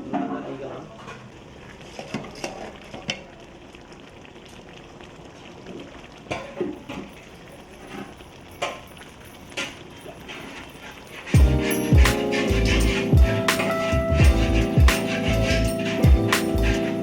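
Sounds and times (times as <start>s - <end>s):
faint sizzle: 0.0s - 17.0s
metal utensil clinking on a pan: 6.4s - 13.1s.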